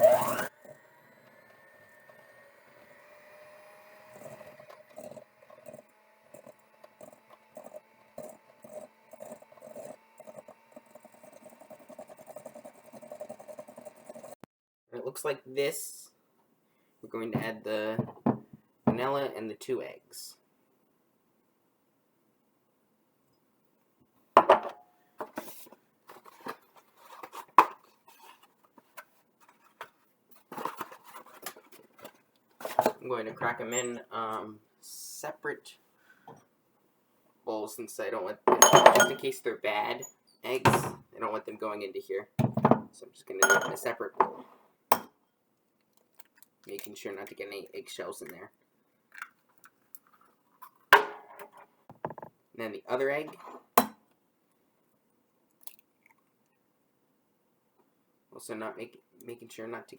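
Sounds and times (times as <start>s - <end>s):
stand mixer motor whine: 0.0s - 14.4s
bowls and utensils clinking: 38.5s - 39.3s, 43.4s - 43.9s.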